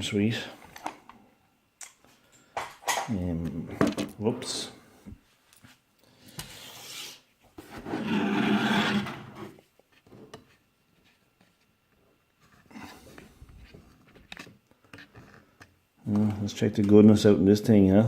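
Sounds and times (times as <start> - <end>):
rubbing and scraping on a lock: 7.7 - 9.6.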